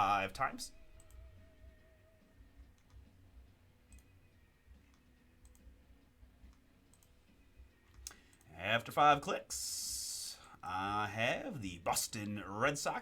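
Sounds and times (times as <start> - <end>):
faint computer mouse clicks: 7.9 - 8.5.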